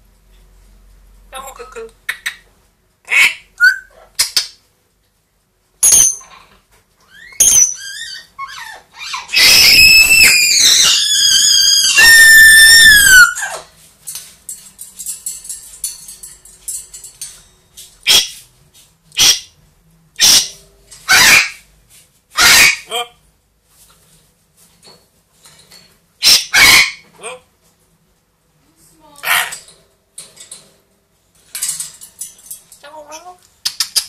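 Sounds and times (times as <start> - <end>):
parrot harsh squawks: 3.0 - 4.2, 7.1 - 13.7, 18.0 - 18.4, 19.2 - 19.5, 20.2 - 21.6, 22.3 - 23.2, 26.2 - 27.4, 29.2 - 29.6
parrot whistled screech: 7.1 - 13.6, 22.4 - 22.8, 26.2 - 27.0.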